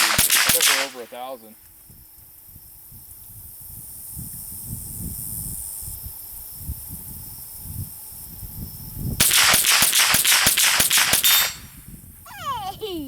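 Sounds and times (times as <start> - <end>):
rapid gunshots: 0.0 - 1.2, 9.2 - 11.6.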